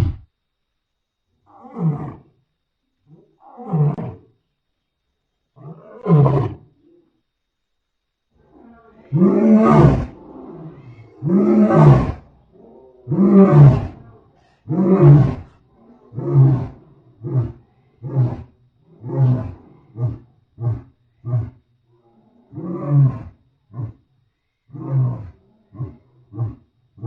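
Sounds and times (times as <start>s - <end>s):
lion roaring: 1.5s - 2.3s, 5.6s - 6.9s, 8.4s - 24.0s, 24.7s - 26.7s.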